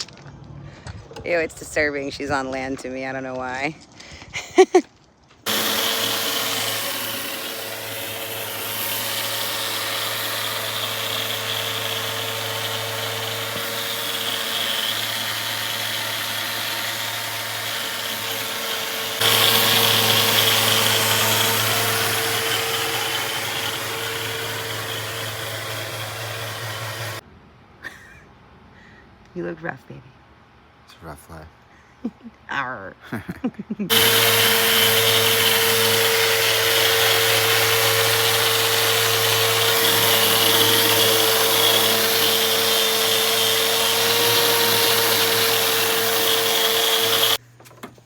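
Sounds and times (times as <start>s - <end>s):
power tool running: 5.4s - 27.2s, 33.9s - 47.4s.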